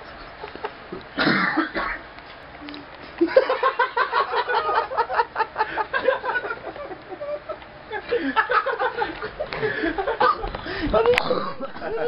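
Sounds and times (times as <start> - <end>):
person laughing: 3.2 - 12.0.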